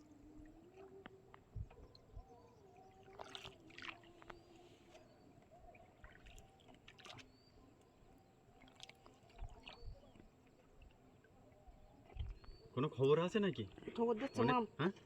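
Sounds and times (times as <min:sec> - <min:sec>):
water splashing and dripping: 0:03.0 - 0:04.4, 0:05.9 - 0:07.3, 0:08.5 - 0:11.4, 0:12.0 - 0:14.2.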